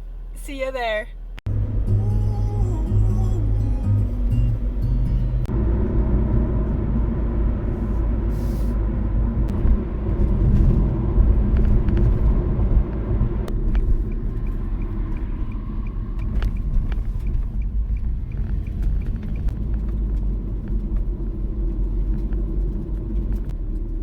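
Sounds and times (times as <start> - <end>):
car engine and road noise: 0.0 - 24.0
light regular ticking: 13.5 - 21.2.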